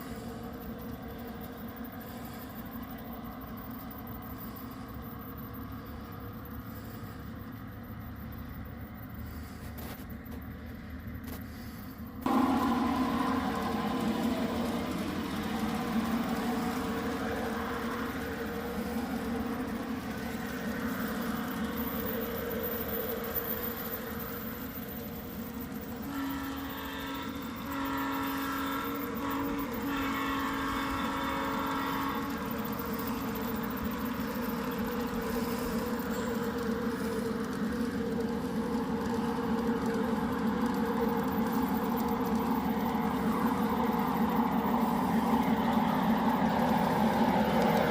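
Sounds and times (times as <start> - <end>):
model train running on track: 0.0 - 47.9
train horn blasts: 25.9 - 33.2.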